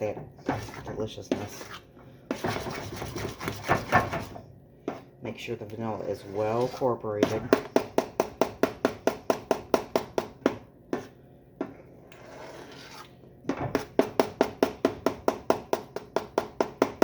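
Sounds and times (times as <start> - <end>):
soft spoon scrape: 6.0 - 7.0, 12.1 - 13.2.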